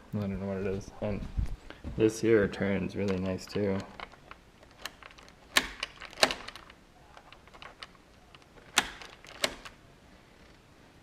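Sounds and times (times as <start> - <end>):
lock mechanism clicks: 3.0 - 9.8.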